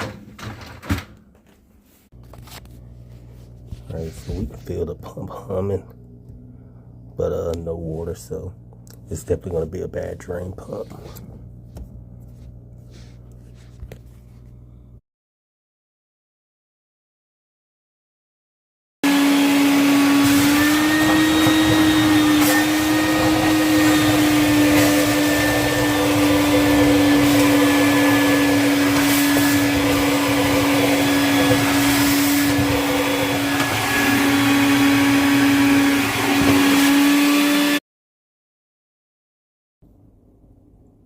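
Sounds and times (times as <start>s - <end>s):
electric motor humming: 19.1s - 37.8s.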